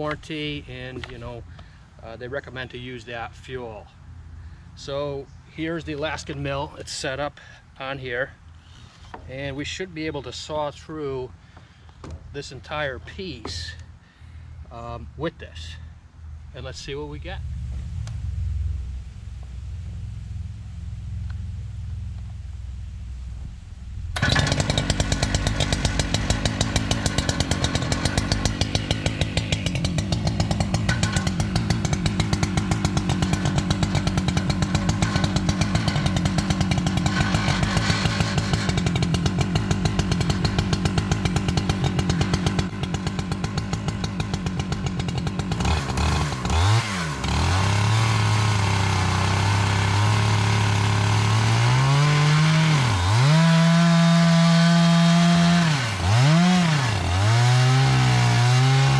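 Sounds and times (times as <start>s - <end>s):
chainsaw running hard: 24.2s - 58.9s.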